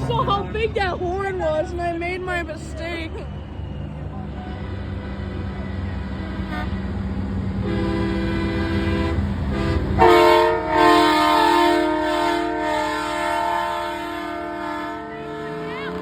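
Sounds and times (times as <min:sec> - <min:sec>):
diesel engine rumble: 0:00.0 - 0:16.0
truck air horn blowing: 0:04.3 - 0:06.9, 0:07.6 - 0:16.0.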